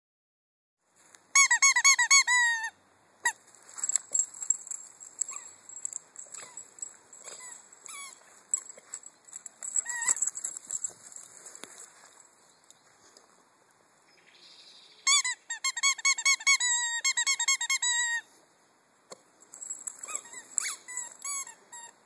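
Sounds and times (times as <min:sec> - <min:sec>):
squeaky ball toy squeaks: 0:01.4 - 0:03.4, 0:04.1 - 0:08.8, 0:09.6 - 0:10.9, 0:15.1 - 0:18.2, 0:19.6 - 0:22.0.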